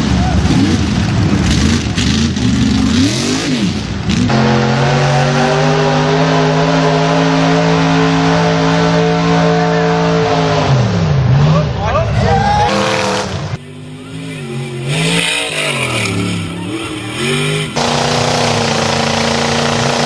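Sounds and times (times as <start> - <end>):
motor revving and droning: 12.7 - 20.0.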